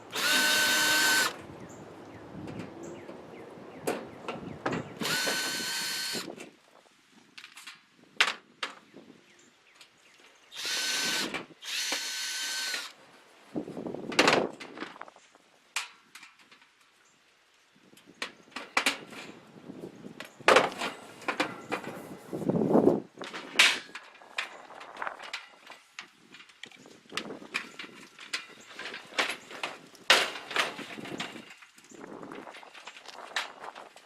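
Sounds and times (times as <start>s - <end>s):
power drill running: 0.1s - 1.4s, 5.0s - 6.3s, 10.6s - 12.9s.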